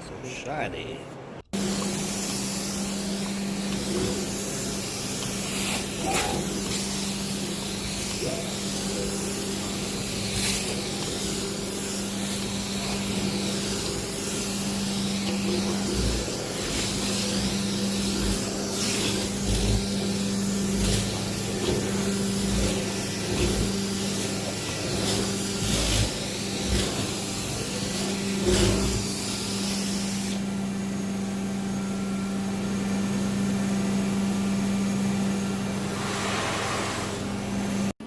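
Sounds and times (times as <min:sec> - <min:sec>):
machine humming: 0:01.4 - 0:31.9
swishing hissing strokes: 0:01.6 - 0:30.4.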